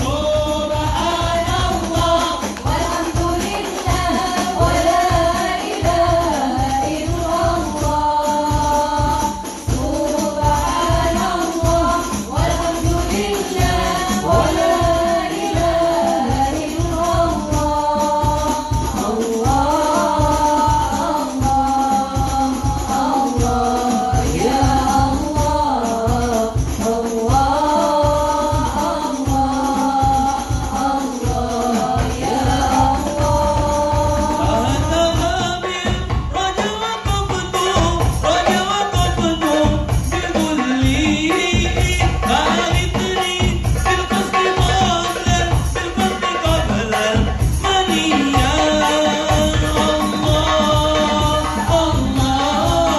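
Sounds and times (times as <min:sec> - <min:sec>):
women's backing vocals: 0:00.0 - 0:36.9, 0:47.9 - 0:52.9
hand drums beating: 0:00.0 - 0:52.9
person singing devotional song: 0:00.0 - 0:52.9
tambourine jingles: 0:00.0 - 0:52.9.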